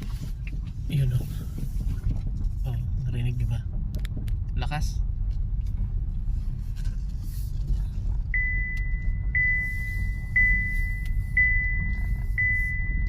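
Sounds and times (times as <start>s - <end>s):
road and tyre rumble: 0.0s - 13.0s
seatbelt reminder beeps: 8.3s - 13.0s.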